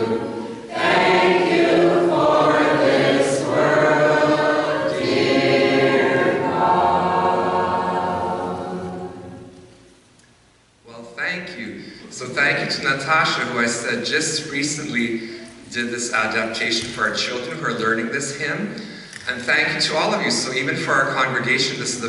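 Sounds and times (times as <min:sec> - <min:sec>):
congregation singing a hymn: 0:00.0 - 0:09.9.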